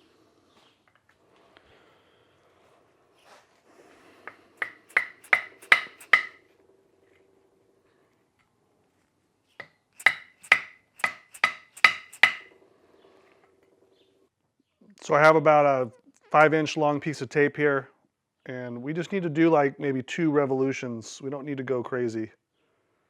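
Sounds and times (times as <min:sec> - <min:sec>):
hammer tapping on metal: 0:04.6 - 0:06.4, 0:10.0 - 0:12.5.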